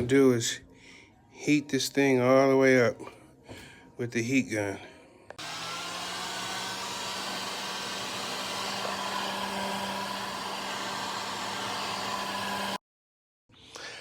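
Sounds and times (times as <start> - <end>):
heat gun blowing: 5.4 - 12.8.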